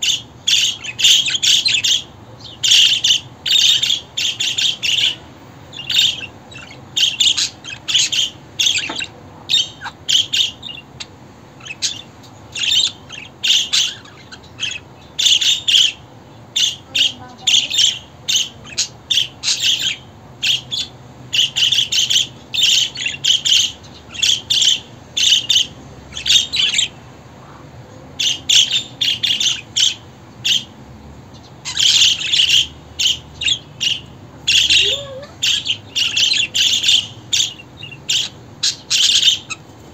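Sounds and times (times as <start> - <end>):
budgerigars chirping: 0.0 - 39.9.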